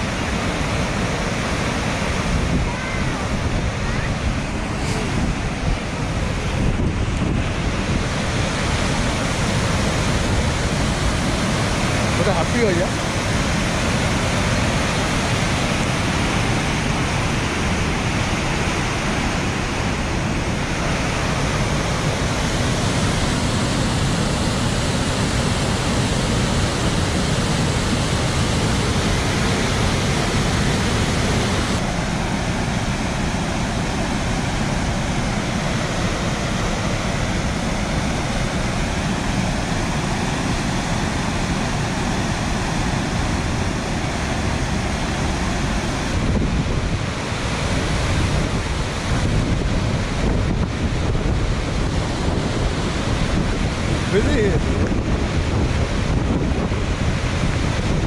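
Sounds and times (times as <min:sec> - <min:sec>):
river water rushing over rocks: 0:00.0 - 0:58.0.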